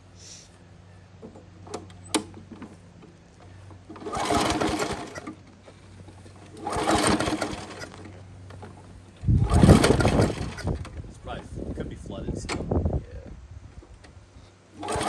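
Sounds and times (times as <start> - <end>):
lawn mower engine cranking: 1.2 - 11.4, 13.8 - 15.0.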